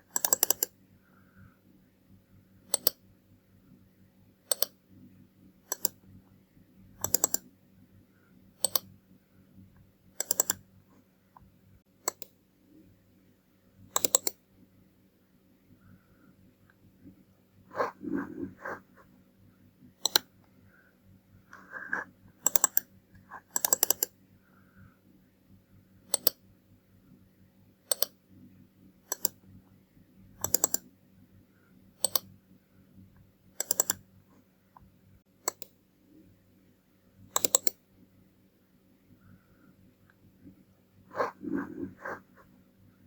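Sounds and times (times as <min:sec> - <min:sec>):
faint steady hum: 0:00.0 - 0:43.0
mouse buttons clicking: 0:00.1 - 0:00.7, 0:02.7 - 0:03.0, 0:04.5 - 0:04.8, 0:05.7 - 0:06.0, 0:07.0 - 0:07.5, 0:08.6 - 0:08.9, 0:10.2 - 0:10.6, 0:12.0 - 0:12.4, 0:13.9 - 0:14.4, 0:20.0 - 0:20.3, 0:21.5 - 0:24.1, 0:26.1 - 0:26.4, 0:27.9 - 0:28.2, 0:29.1 - 0:29.4, 0:30.4 - 0:30.9, 0:32.0 - 0:32.3, 0:33.6 - 0:34.0, 0:35.4 - 0:35.8, 0:37.3 - 0:37.8.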